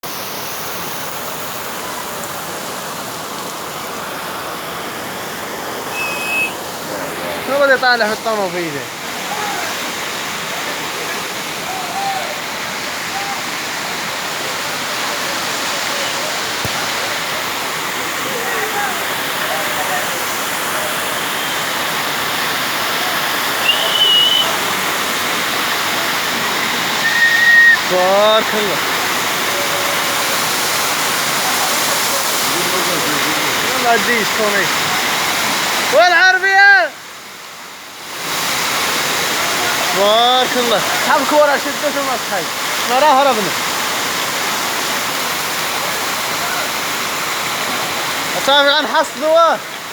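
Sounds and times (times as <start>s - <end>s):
steady rain hissing: 0.0s - 49.9s
high whistle-like tone: 5.9s - 6.6s, 23.6s - 24.6s, 27.0s - 27.9s.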